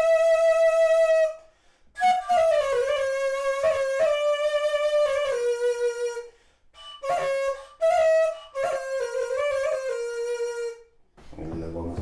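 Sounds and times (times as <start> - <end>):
membrane flute playing: 0.0 - 1.4, 2.0 - 12.0.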